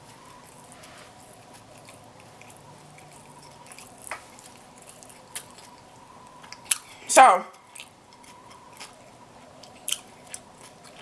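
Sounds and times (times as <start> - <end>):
wet mouth smacks chewing: 0.5 - 9.0.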